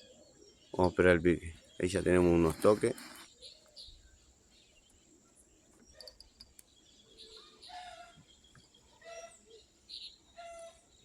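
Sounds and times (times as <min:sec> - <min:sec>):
faint bird calls: 0:05.4 - 0:11.0.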